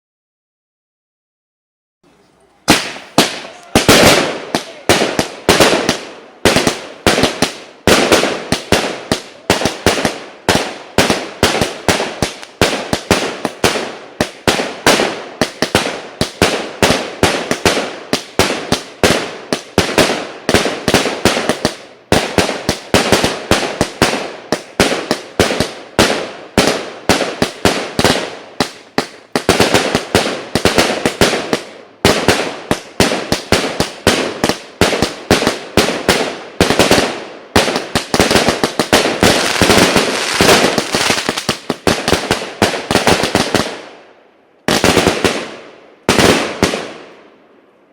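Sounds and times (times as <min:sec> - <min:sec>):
firework bangs with crackling: 0:02.6 - 0:47.3.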